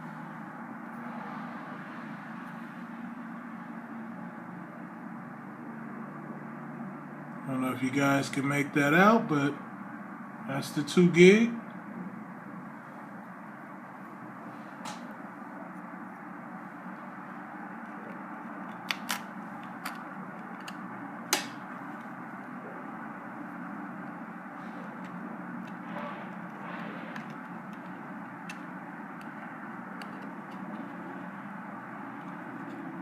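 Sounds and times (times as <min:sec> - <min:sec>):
low background hum: 0:00.0 - 0:33.0.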